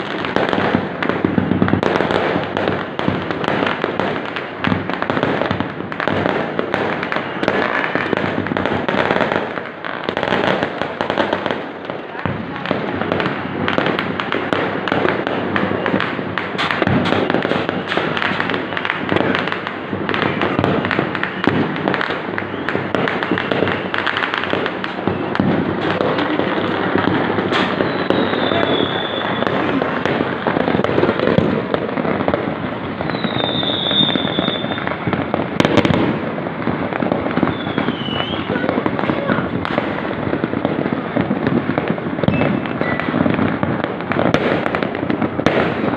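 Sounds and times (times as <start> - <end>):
firecrackers crackling: 0.0 - 45.9
firework whistles: 4.0 - 10.6, 13.3 - 36.3, 37.3 - 40.0, 42.2 - 43.5.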